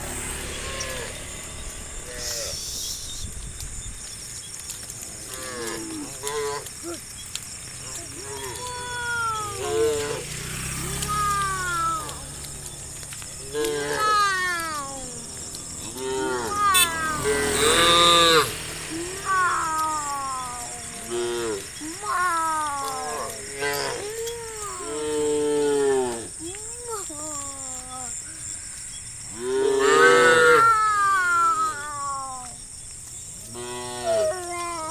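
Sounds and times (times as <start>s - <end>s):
high insect-like hiss with ticking: 0.0s - 34.9s
cattle calling: 0.5s - 3.1s, 5.2s - 12.4s, 13.0s - 27.6s, 29.3s - 32.4s, 33.5s - 34.9s
cattle mooing: 8.2s - 10.4s, 13.4s - 14.4s, 15.8s - 22.0s, 29.4s - 30.7s.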